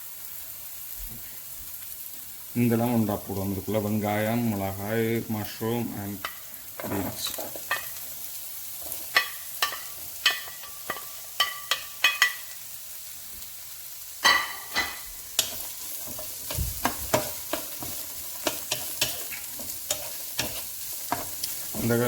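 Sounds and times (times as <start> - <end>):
vegetables sizzling in hot oil: 0.0 - 22.0
utensil clinking and scraping pan: 6.2 - 8.0, 8.8 - 12.6, 14.2 - 22.0.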